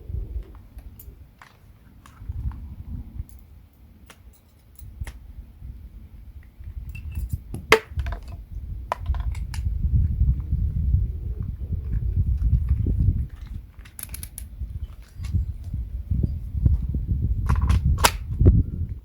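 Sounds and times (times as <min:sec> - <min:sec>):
metal parts clicking and clinking: 0:03.3 - 0:04.9, 0:13.4 - 0:15.4.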